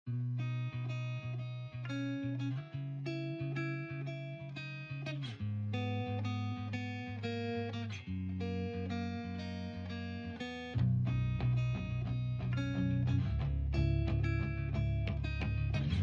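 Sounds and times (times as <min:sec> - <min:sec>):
plucked guitar music: 0:00.1 - 0:16.0.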